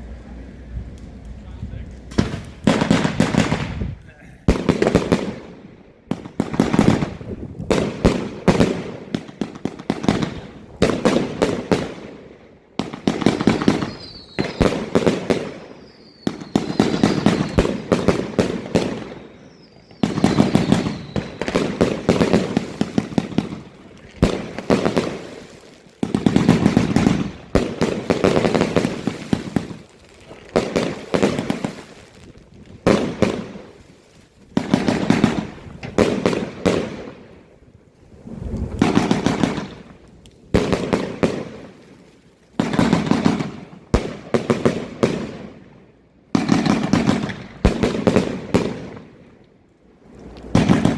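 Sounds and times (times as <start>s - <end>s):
fireworks crackling: 0.0s - 45.7s, 46.3s - 50.9s
fireworks rapid sharp shots: 2.1s - 32.2s, 32.8s - 33.8s, 34.6s - 37.3s, 38.8s - 41.8s, 42.6s - 45.6s, 46.4s - 49.2s, 50.5s - 50.9s
faint firework whistles: 13.4s - 23.2s.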